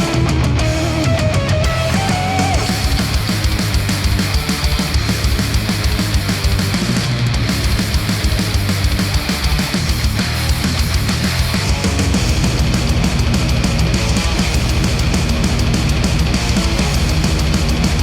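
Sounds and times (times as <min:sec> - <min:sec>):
rock music through headphones: 0:00.0 - 0:18.0.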